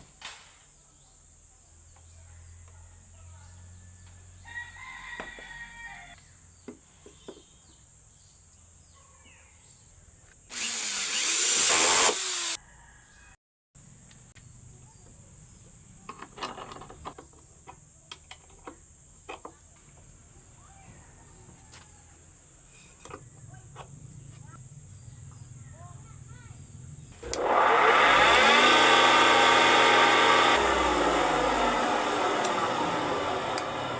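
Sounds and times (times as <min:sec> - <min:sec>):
power drill running: 0:10.5 - 0:12.6, 0:27.2 - 0:33.9.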